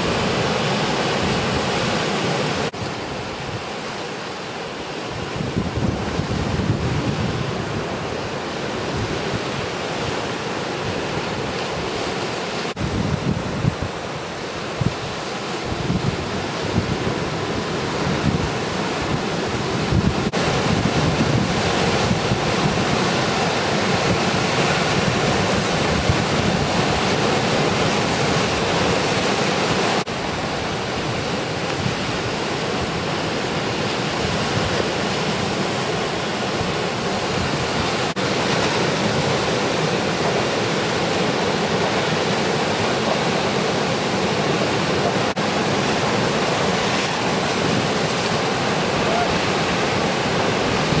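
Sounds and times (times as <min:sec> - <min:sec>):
ocean surf breaking: 0:00.0 - 0:51.0
wind buffeting microphone: 0:05.1 - 0:09.8, 0:12.7 - 0:29.0, 0:36.6 - 0:51.0.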